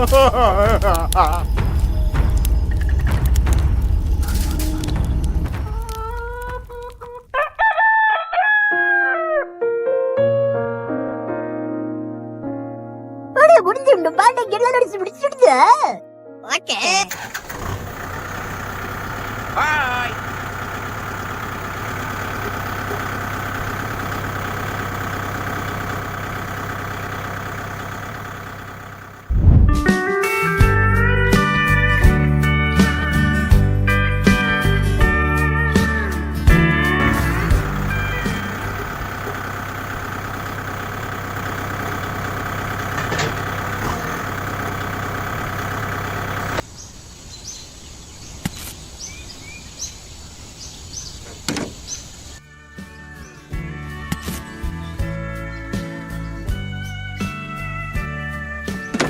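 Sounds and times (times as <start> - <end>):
small engine idling: 0.0 - 6.9, 17.1 - 29.4, 35.8 - 46.7
birds chirping: 0.0 - 7.3, 17.1 - 29.4, 36.9 - 53.6.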